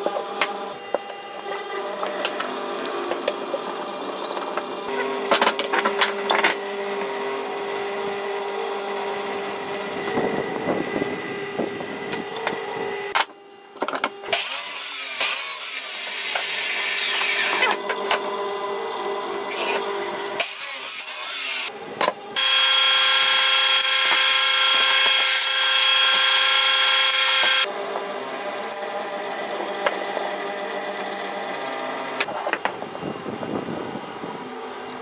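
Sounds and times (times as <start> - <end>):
power saw cutting wood: 14.3 - 21.7, 22.4 - 32.4.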